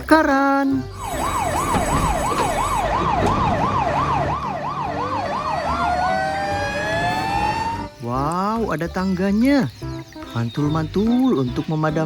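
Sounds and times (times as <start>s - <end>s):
fire engine siren: 1.0s - 8.0s.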